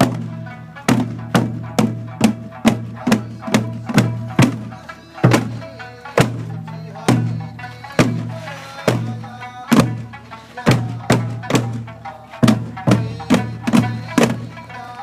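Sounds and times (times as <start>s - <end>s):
folk music with heavy drum beat: 0.0s - 15.0s.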